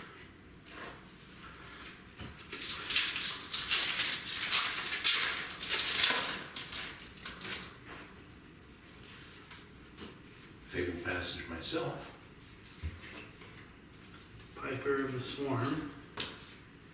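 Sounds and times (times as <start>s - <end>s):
wrappers and cards crinkling: 1.7s - 7.8s.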